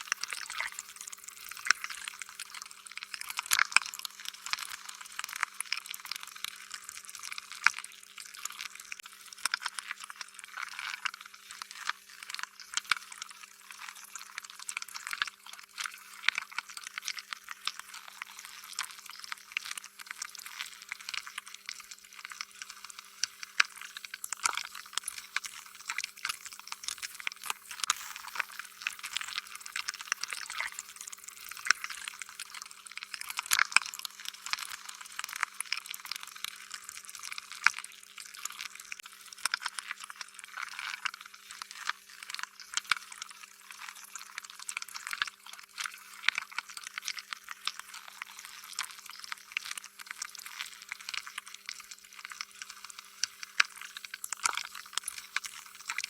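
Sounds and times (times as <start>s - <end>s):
slime squelching: 22.3s - 32.5s.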